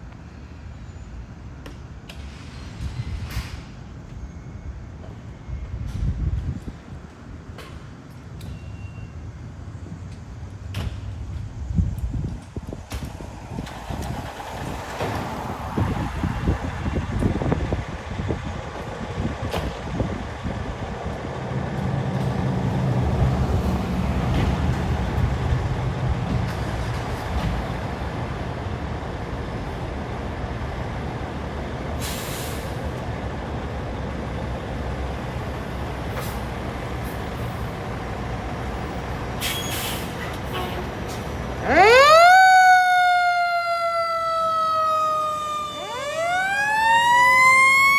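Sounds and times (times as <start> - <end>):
diesel engines rumbling: 9.6 - 47.9
air brake hiss: 32.0 - 33.0, 39.4 - 41.3.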